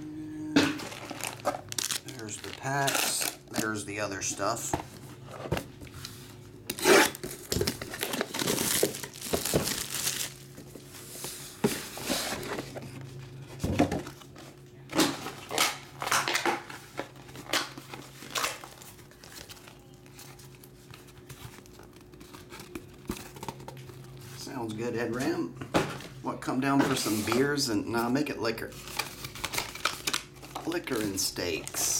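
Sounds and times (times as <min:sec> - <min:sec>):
packaging crinkling and rustling: 0:00.8 - 0:04.7, 0:05.7 - 0:11.1, 0:15.1 - 0:24.3, 0:28.7 - 0:31.9.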